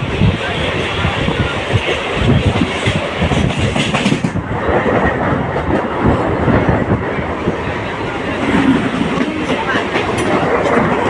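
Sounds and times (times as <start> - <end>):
train rumble: 0.0 - 11.0
train wheels clattering over rail joints: 1.7 - 6.8, 8.3 - 11.0.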